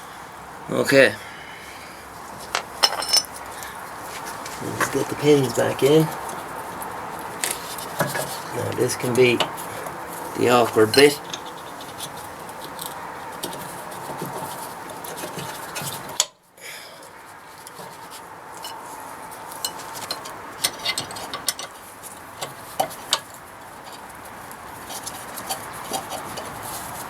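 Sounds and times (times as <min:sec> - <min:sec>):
metal brake parts clinking: 0:02.5 - 0:03.4, 0:10.5 - 0:12.1.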